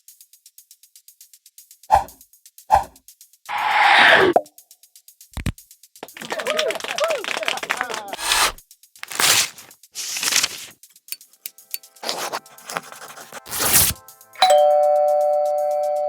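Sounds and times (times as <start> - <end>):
pen strokes: 3.5 - 4.4, 8.2 - 10.7, 12.0 - 14.0
page turning: 8.1 - 10.7, 12.0 - 14.0
paper tearing: 8.1 - 10.7, 12.0 - 14.0
cloth ripping: 8.2 - 10.7, 12.0 - 14.0
scissors cutting: 8.2 - 10.7, 12.0 - 14.0
two-note doorbell chime: 14.4 - 16.0.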